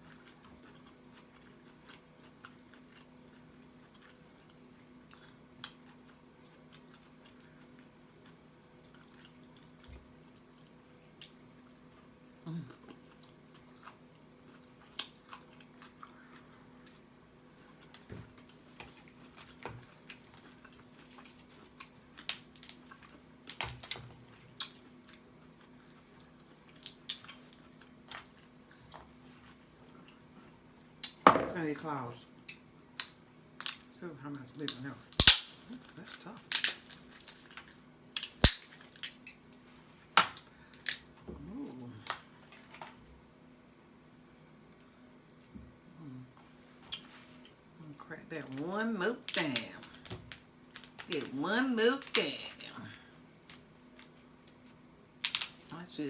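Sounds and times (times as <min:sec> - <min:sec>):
faint steady hum: 0:00.0 - 0:56.0.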